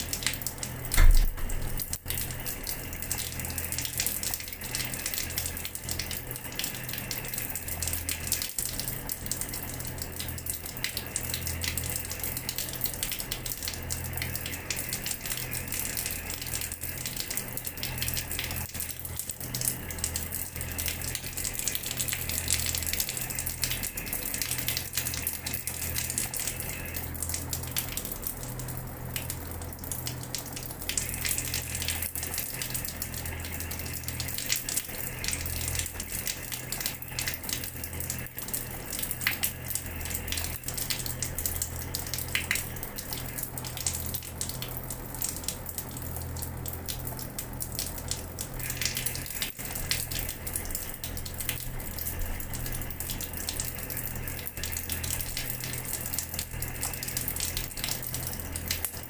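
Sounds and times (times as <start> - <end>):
low steady hum: 0.0 - 59.0
tap water splashing on floor: 0.2 - 2.2.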